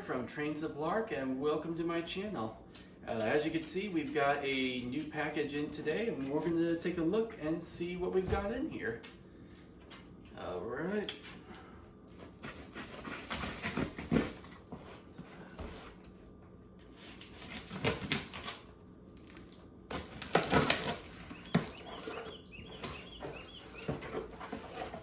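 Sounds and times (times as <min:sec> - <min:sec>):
cardboard box rustling and scraping: 0:12.2 - 0:16.0, 0:20.0 - 0:25.0.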